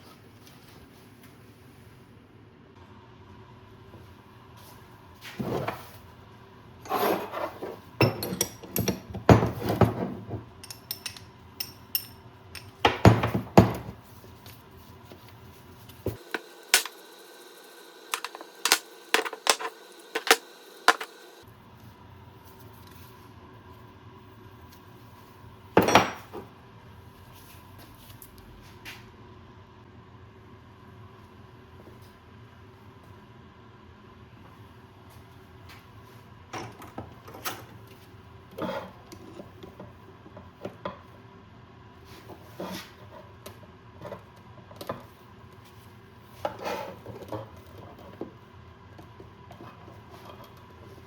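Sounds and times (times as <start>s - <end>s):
metal tools clinking: 10.6s - 12.7s, 16.2s - 17.0s, 18.1s - 21.2s.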